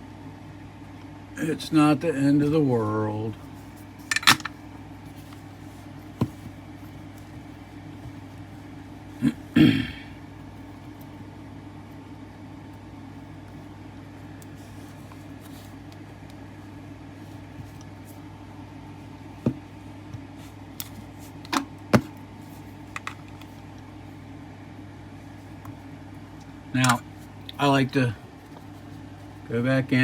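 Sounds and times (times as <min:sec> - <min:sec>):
tools clicking and knocking: 0:04.1 - 0:04.5.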